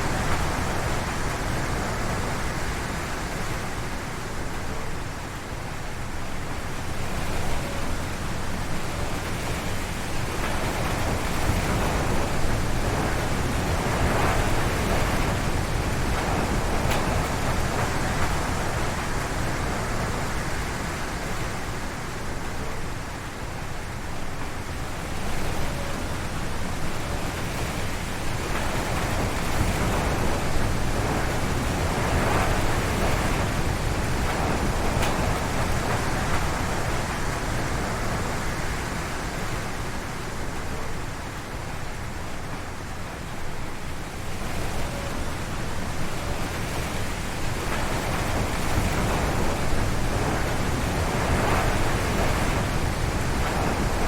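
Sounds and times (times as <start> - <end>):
strong wind through trees: 0.0 - 54.0.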